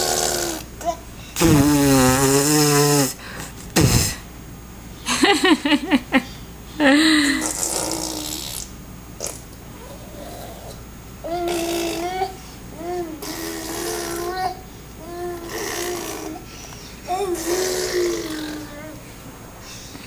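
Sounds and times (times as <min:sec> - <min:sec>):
baby blowing raspberry: 0:00.0 - 0:00.7, 0:01.4 - 0:03.2, 0:03.8 - 0:04.2, 0:07.2 - 0:16.4, 0:17.1 - 0:18.8
baby babbling and cooing: 0:09.8 - 0:19.1.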